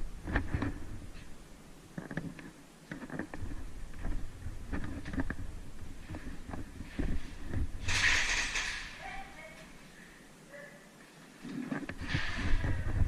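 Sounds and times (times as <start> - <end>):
footsteps: 2.0 - 9.9.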